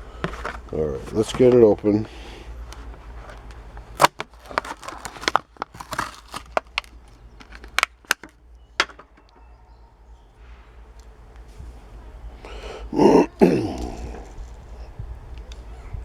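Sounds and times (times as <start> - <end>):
stiff plastic crackling: 0.0 - 9.5, 12.5 - 16.0
cardboard tearing: 3.1 - 7.9.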